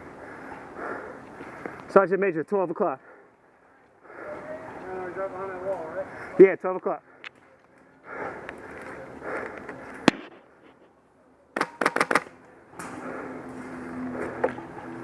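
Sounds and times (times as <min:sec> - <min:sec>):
airsoft gun shots: 0:11.6 - 0:12.3.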